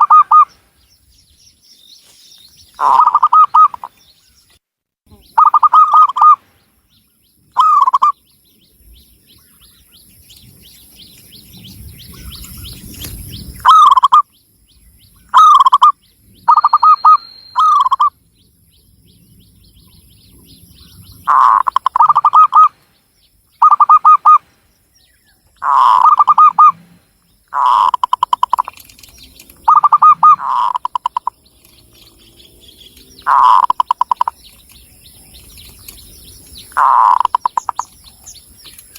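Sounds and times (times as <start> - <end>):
dove cooing: 0.0 - 0.5, 2.8 - 3.9, 5.1 - 6.4, 21.1 - 22.7, 23.6 - 24.4, 25.6 - 34.7, 35.3 - 38.4.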